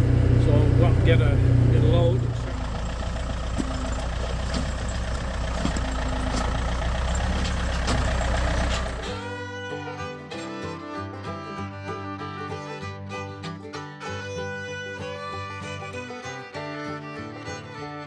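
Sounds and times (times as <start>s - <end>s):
tractor engine running: 0.0s - 9.4s
fiddle and guitar music: 0.0s - 18.0s.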